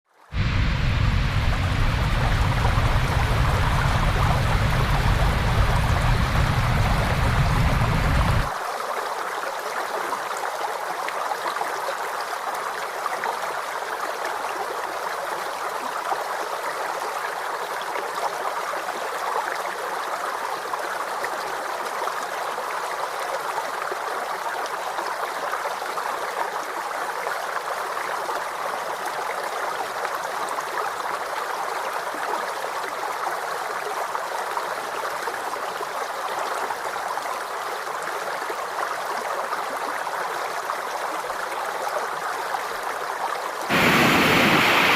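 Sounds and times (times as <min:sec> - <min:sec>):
waterfall rushing: 0:00.3 - 0:08.6, 0:43.7 - 0:44.9.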